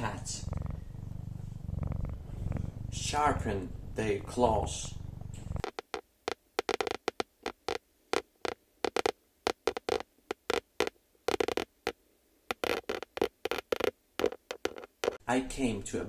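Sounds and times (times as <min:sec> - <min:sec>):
cat scratching upholstery: 0:05.4 - 0:15.2.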